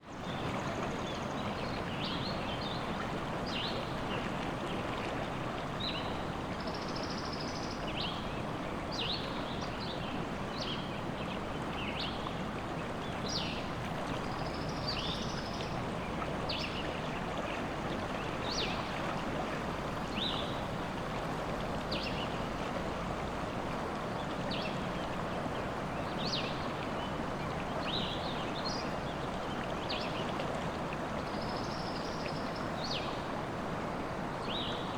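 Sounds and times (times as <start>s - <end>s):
river water rushing: 7.3s - 34.9s.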